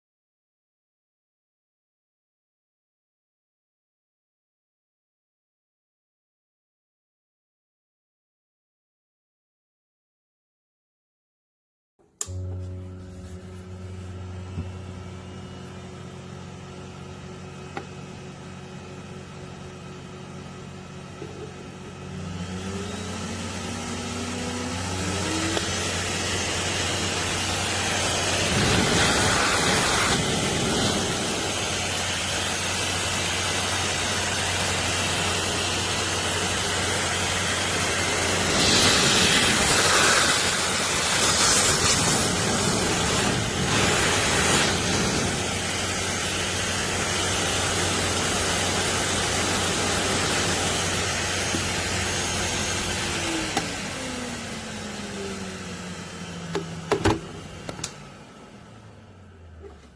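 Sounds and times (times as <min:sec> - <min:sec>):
dog hair dryer blowing: 0:21.9 - 0:58.0.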